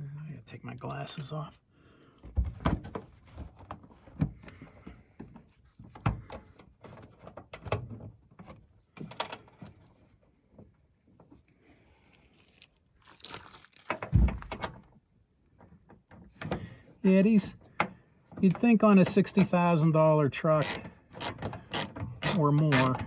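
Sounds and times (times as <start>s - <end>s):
low thump: 14.1s - 14.6s
ratchet and fastener clicks: 20.6s - 23.0s.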